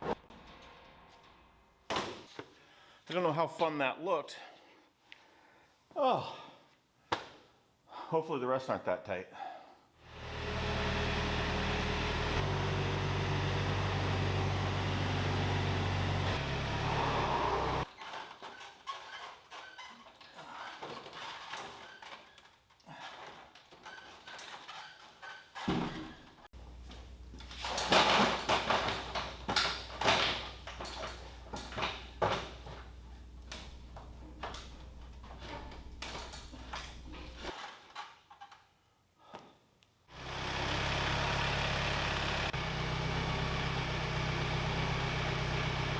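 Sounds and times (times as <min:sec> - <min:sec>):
sawmill engine running: 0:10.1 - 0:17.8, 0:40.2 - 0:45.9
scraping and knocking handling noises: 0:26.8 - 0:38.6.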